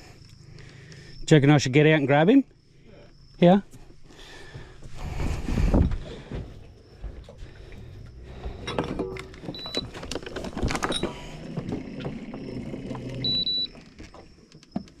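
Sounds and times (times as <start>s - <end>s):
knocks and clatter against hull: 4.4s - 15.0s.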